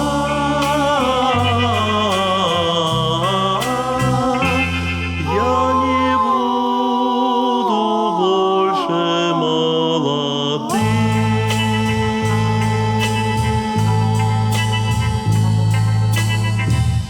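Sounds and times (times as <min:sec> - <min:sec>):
low bass note: 0:00.0 - 0:06.3, 0:10.7 - 0:17.0.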